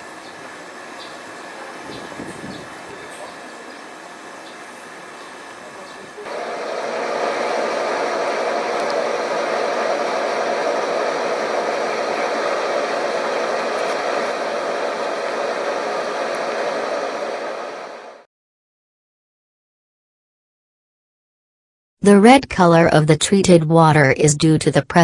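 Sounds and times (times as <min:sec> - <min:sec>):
air churning through wastewater: 0:06.2 - 0:18.2.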